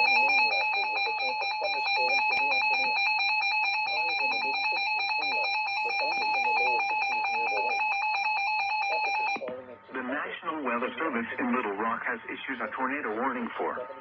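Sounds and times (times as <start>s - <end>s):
electronic alarm tone: 0.0s - 9.6s.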